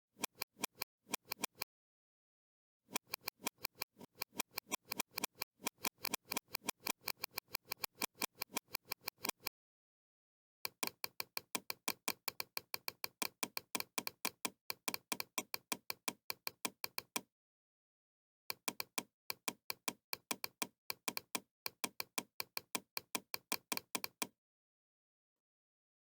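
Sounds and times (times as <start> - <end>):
rapid mouse clicks: 0.2 - 1.6, 2.9 - 9.5, 10.7 - 17.3, 18.5 - 24.3.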